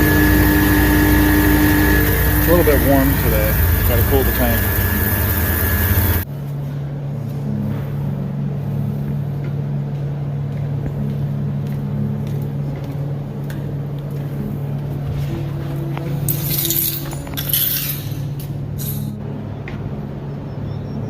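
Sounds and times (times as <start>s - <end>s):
machine motor hum: 0.0s - 6.3s.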